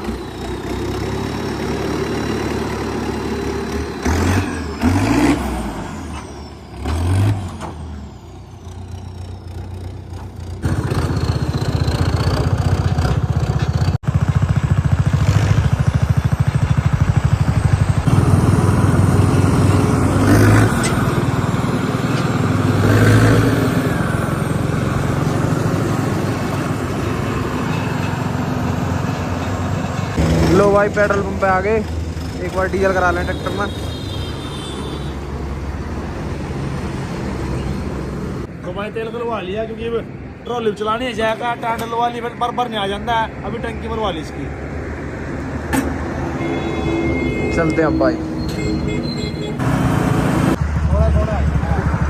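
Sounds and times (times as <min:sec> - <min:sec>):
diesel tractor engine running: 0:00.0 - 0:33.4.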